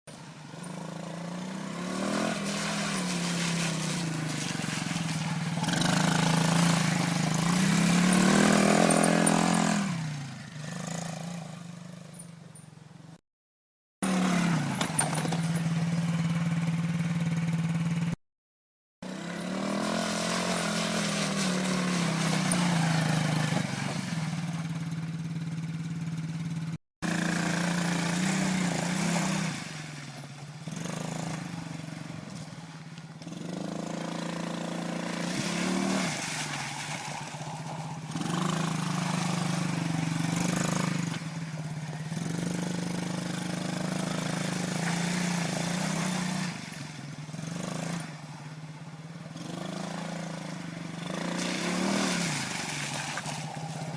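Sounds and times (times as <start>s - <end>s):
atv engine revving: 0.2s - 12.3s, 14.0s - 18.2s, 19.0s - 53.9s.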